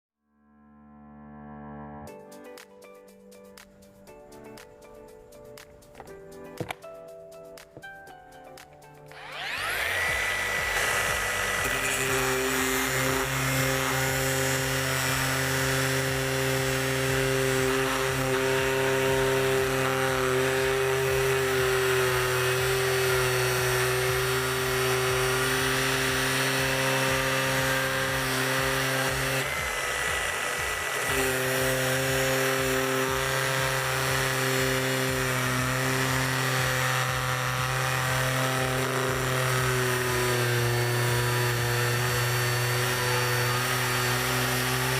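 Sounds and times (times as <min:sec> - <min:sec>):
background music with a beat: 0:02.1 - 0:38.3
angle grinder whining: 0:09.1 - 0:44.9.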